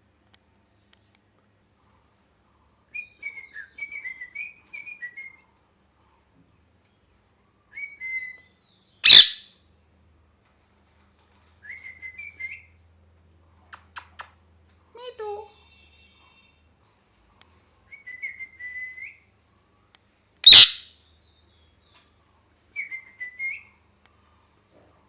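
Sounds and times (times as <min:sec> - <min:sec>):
parrot chirping: 0:09.0 - 0:09.5, 0:20.4 - 0:20.9.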